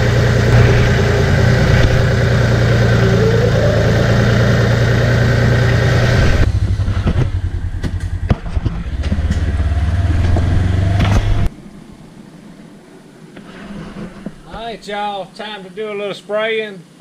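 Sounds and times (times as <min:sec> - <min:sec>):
heavy machinery engine running: 0:00.0 - 0:09.2.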